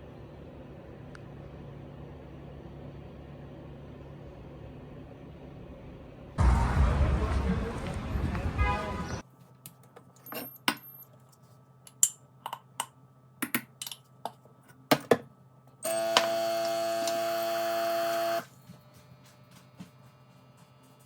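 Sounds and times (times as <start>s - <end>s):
small objects clicking and tapping: 11.9s - 15.2s
small electric motor humming: 15.8s - 18.5s.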